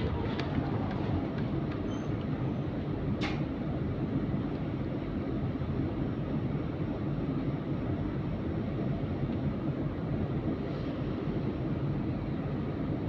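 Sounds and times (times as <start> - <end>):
electric bus rumble: 0.0 - 13.0.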